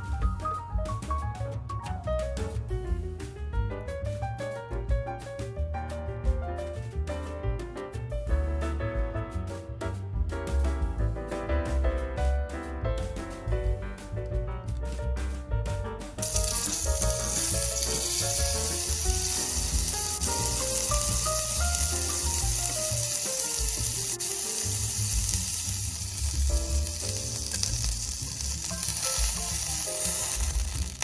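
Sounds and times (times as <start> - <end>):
piano music: 0.0 - 31.0
food sizzling in hot oil: 16.2 - 31.0.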